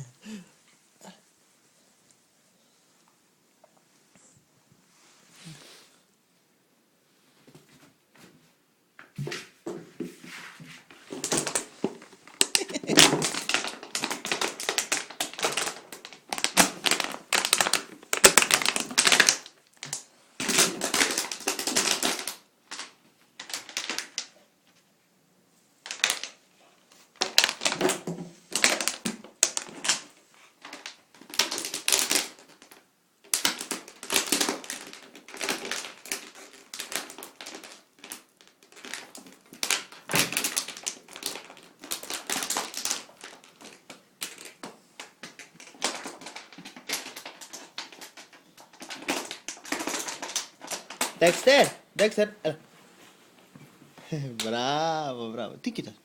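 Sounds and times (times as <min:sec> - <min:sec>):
plastic bottle crackling: 0:10.8 - 0:24.4, 0:25.8 - 0:26.4, 0:27.1 - 0:52.6.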